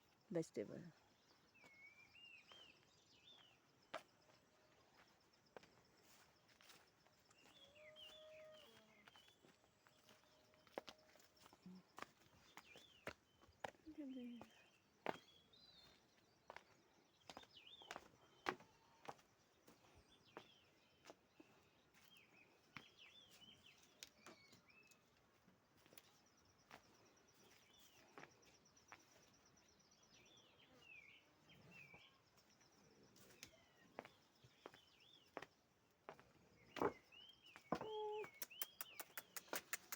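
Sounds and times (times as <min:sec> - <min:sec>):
birds chirping: 0:00.0 - 0:39.9
sharp clicks: 0:38.4 - 0:39.9.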